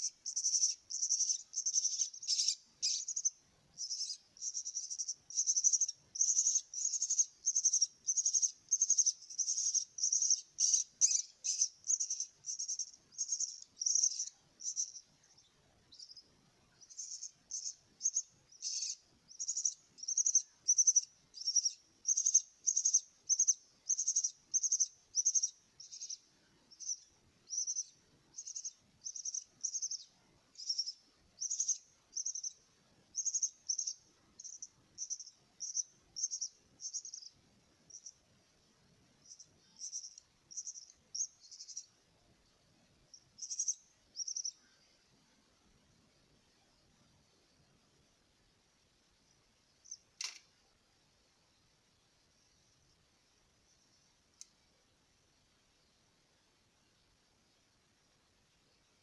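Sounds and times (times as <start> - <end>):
bird chick begging chirps: 0.3 - 15.0.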